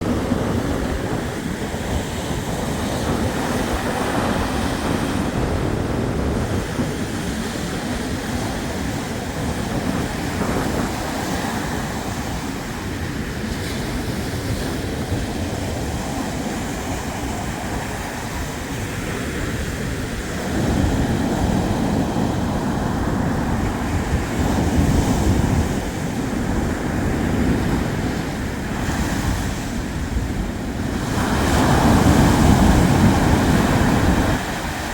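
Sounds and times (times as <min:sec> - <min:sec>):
surf breaking on shore: 0:00.0 - 0:34.9.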